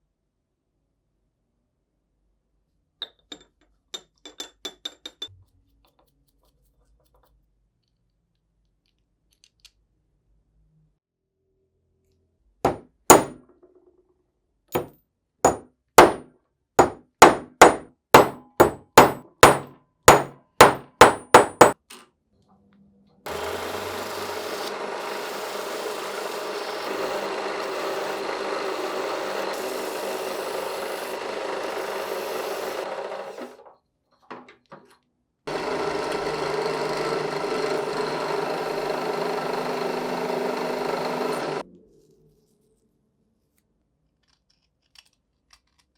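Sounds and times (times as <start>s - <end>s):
power tool running: 12.7s - 13.4s, 15.5s - 16.2s, 16.8s - 21.8s, 23.3s - 33.6s, 35.5s - 41.6s
sharp hammer blows: 16.8s - 21.8s.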